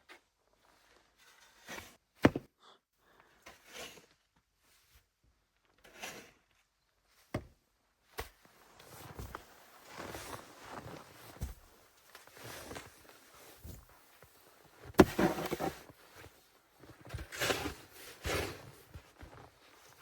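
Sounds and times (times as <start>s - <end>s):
rustling and shuffling: 8.5s - 20.0s.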